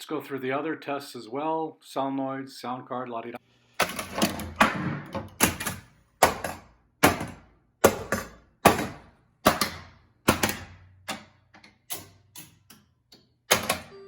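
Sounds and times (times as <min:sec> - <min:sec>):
pinball solenoids clacking: 0:03.8 - 0:12.9, 0:13.5 - 0:13.9.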